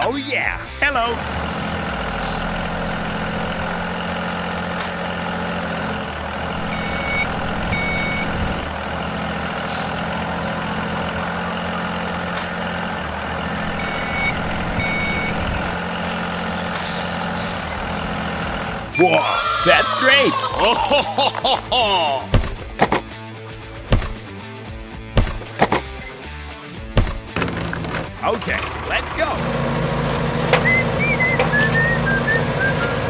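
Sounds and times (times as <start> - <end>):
heavy truck engine running: 0.0 - 19.2, 20.4 - 33.0
short high beeps: 6.6 - 8.6, 13.7 - 15.8, 19.0 - 19.3.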